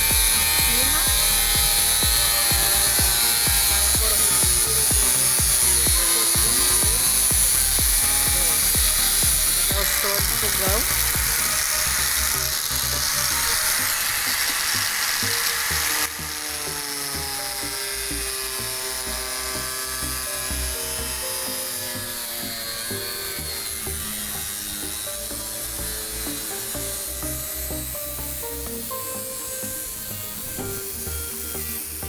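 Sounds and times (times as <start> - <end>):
background music with beat: 0.0 - 13.7, 26.3 - 32.0
power tool whining: 0.0 - 32.0.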